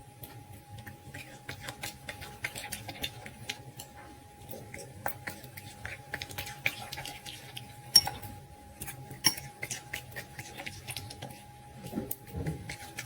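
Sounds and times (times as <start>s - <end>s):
dog crunching food: 0.2s - 13.0s
bowl clinking: 7.9s - 8.3s.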